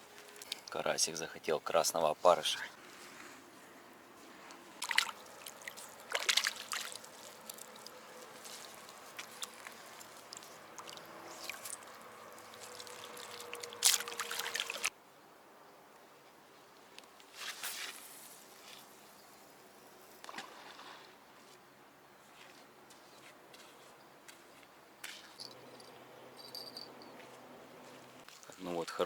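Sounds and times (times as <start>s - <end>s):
faint steady hiss: 0.0s - 29.0s
water splashing and trickling: 4.7s - 14.9s.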